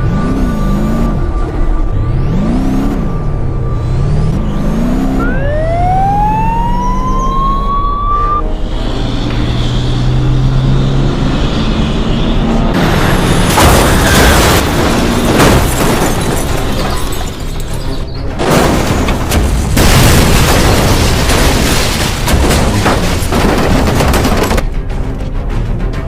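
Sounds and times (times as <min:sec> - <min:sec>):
music: 0:07.1 - 0:10.2, 0:15.6 - 0:19.8, 0:22.3 - 0:26.0
booming crash and explosion effects: 0:12.8 - 0:16.6, 0:18.4 - 0:24.6.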